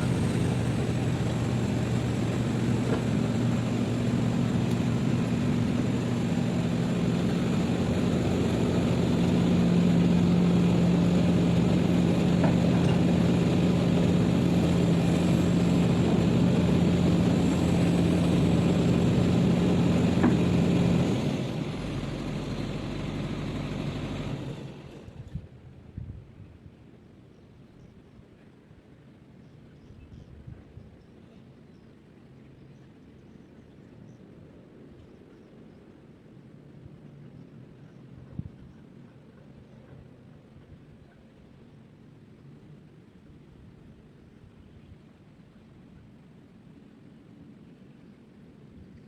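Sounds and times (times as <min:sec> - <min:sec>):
diesel engine running: 0:00.0 - 0:25.4.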